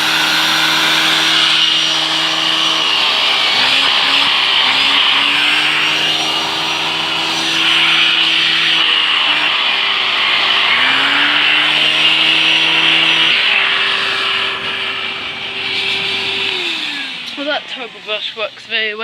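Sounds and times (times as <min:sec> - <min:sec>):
turbo brush whine: 0:00.0 - 0:19.0
vacuum cleaner running: 0:00.0 - 0:19.0.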